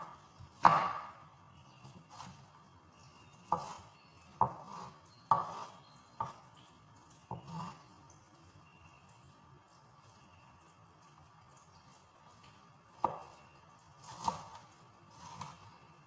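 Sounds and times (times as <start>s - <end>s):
knife chopping onion on board: 0.0s - 1.2s, 3.5s - 6.5s, 13.0s - 13.4s, 14.0s - 15.7s.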